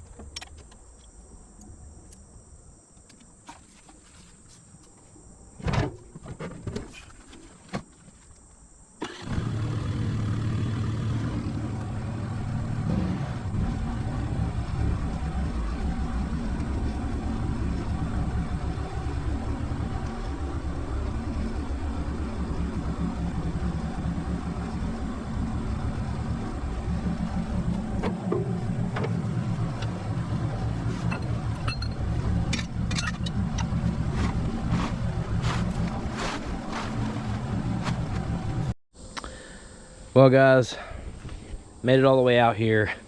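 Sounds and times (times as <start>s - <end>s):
utility vehicle engine running: 9.0s - 38.8s
sharp clicks and rattles: 31.0s - 35.9s.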